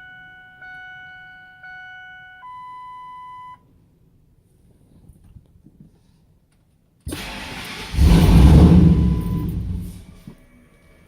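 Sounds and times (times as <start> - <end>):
truck warning chime: 0.0 - 3.6, 8.0 - 10.2
engine cranking: 7.1 - 10.3.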